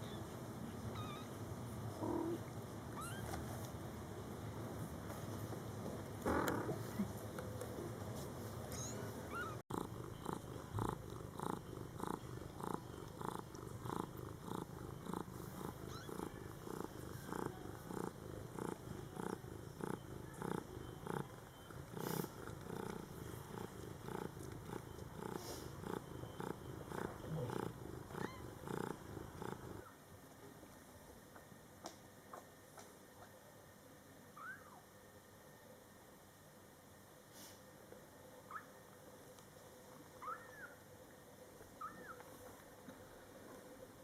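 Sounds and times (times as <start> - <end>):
cat purring: 1.9 - 2.5, 6.2 - 7.1, 8.8 - 30.0.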